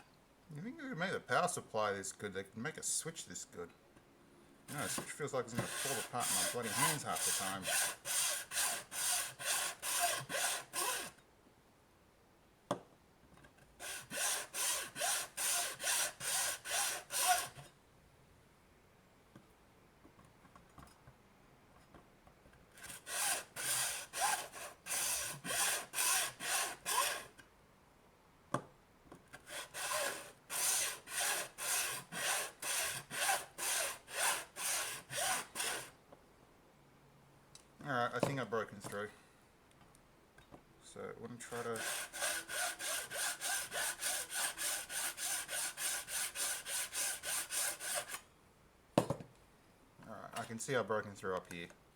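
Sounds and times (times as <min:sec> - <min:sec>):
saw rasping through hard plastic: 0:04.7 - 0:11.2, 0:13.8 - 0:17.7, 0:22.8 - 0:27.4, 0:29.4 - 0:35.9, 0:41.6 - 0:48.2.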